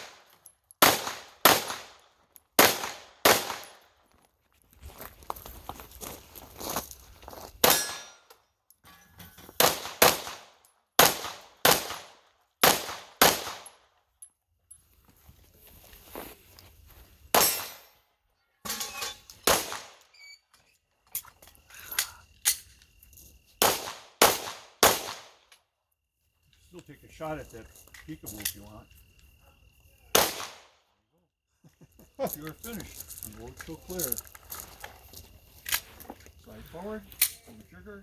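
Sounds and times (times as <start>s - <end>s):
pistol shots: 0.8s - 2.0s, 2.6s - 3.8s, 7.6s - 8.1s, 9.6s - 13.8s, 17.3s - 17.8s, 19.4s - 20.0s, 23.6s - 25.4s, 30.1s - 30.8s
bullets clanging on steel targets: 7.6s - 10.4s, 17.4s - 18.0s, 18.6s - 19.8s.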